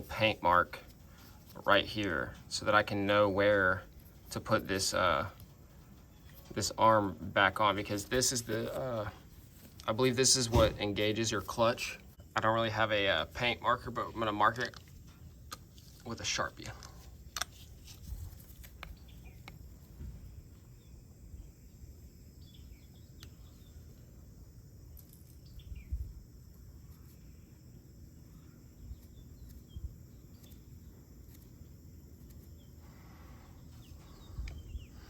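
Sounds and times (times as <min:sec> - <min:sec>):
faint bird chirps: 0:05.5 - 0:07.0, 0:18.8 - 0:31.4, 0:32.2 - 0:35.0.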